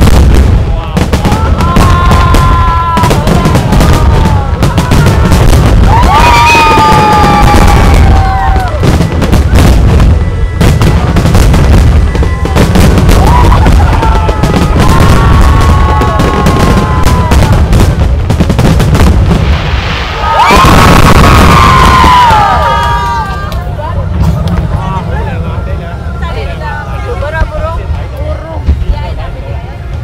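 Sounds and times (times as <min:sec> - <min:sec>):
fireworks bangs and crackles: 0:00.0 - 0:25.8, 0:26.4 - 0:30.0.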